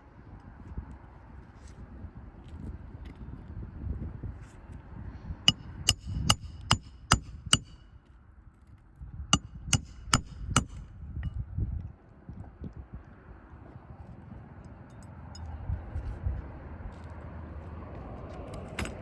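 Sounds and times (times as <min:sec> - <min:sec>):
hammer striking metal: 0:05.5 - 0:07.9, 0:09.4 - 0:10.8.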